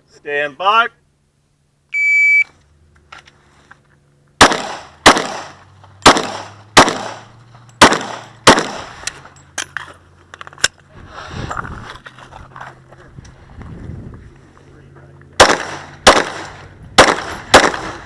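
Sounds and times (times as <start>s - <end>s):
pistol shots with echoes: 4.4s - 8.9s, 15.4s - 18.0s.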